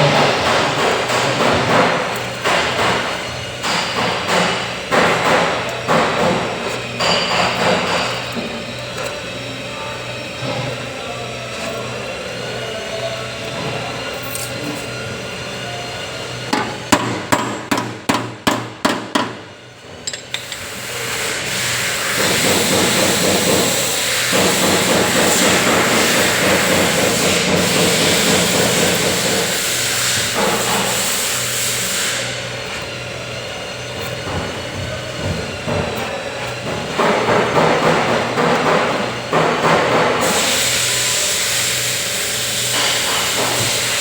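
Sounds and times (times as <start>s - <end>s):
workshop tool running: 0.0s - 44.0s
hammer blows on car metal: 16.5s - 19.5s.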